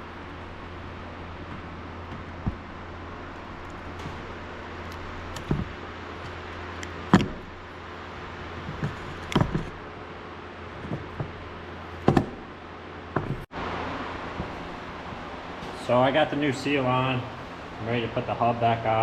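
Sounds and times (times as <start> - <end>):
steady shop hum: 0.0 - 19.0.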